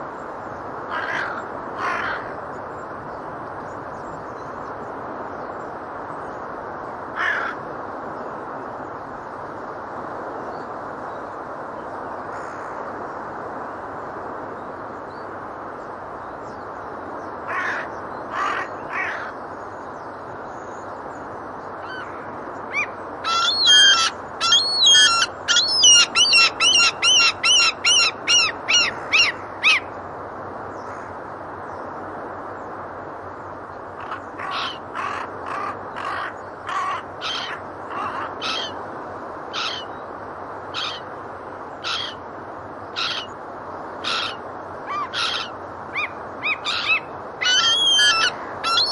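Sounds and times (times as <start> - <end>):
seagulls and geese calling: 21.8 - 29.9, 34.0 - 38.8, 39.5 - 39.9, 40.7 - 41.1, 41.8 - 42.2, 43.0 - 43.3, 44.0 - 48.9.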